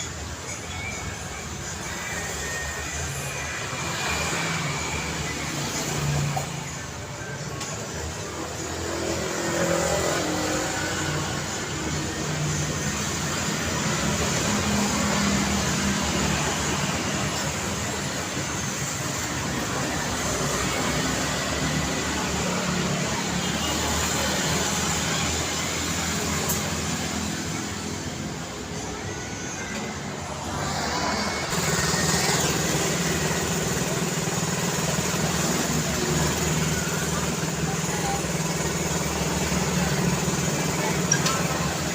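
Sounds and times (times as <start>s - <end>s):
cars passing: 3.6s - 34.7s.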